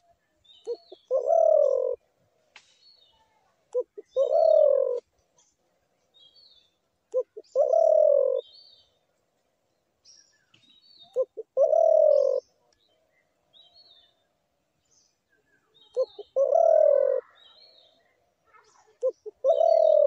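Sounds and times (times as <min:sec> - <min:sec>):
small birds chirping: 0:00.0 - 0:20.0
dove cooing: 0:00.6 - 0:02.1, 0:03.7 - 0:05.1, 0:07.1 - 0:08.6, 0:11.1 - 0:12.5, 0:15.9 - 0:17.4, 0:18.9 - 0:20.0.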